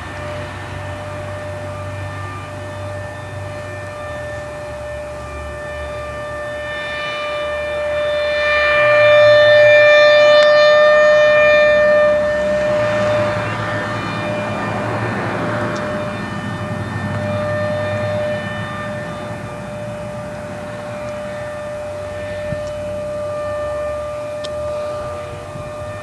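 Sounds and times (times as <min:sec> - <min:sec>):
siren steady tone: 0:00.0 - 0:26.0.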